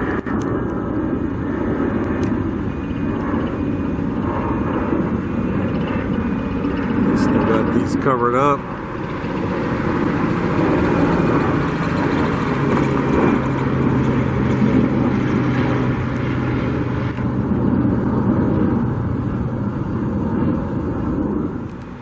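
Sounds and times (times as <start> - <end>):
low engine hum: 0.0 - 22.0.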